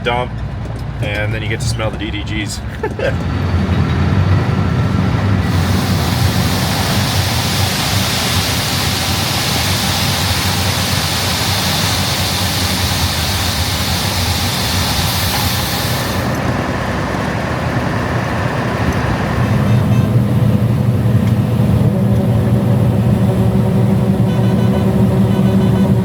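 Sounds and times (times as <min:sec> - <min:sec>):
heavy engine running: 0:00.0 - 0:26.0
steady high hiss: 0:05.5 - 0:16.3.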